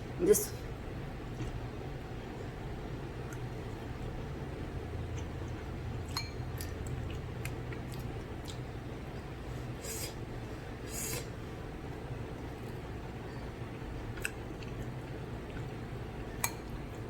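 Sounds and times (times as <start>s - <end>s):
steady low hum: 0.0s - 17.0s
slurping noodles: 9.7s - 10.2s, 10.8s - 11.4s.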